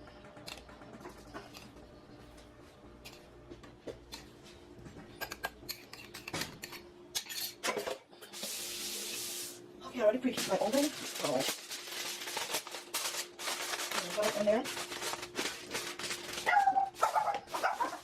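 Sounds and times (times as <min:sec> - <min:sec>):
dishes and utensils clattering: 0:05.1 - 0:08.4.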